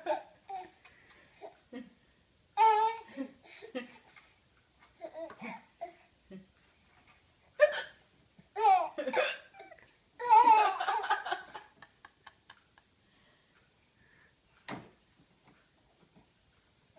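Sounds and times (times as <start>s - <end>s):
laughter: 10.5s - 12.9s.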